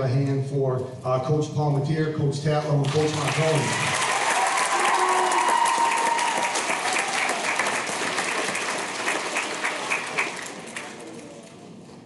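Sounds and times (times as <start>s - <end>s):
audience applauding: 2.8s - 11.6s.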